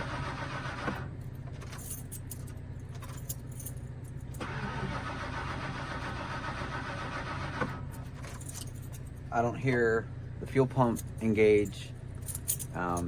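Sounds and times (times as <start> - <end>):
engine cranking on starter: 0.0 - 1.8, 4.4 - 8.4.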